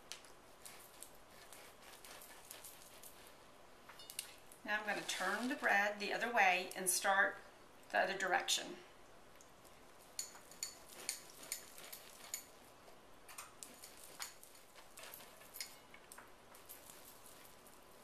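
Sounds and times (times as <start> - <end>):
bread knife sawing crust: 0.5 - 3.4.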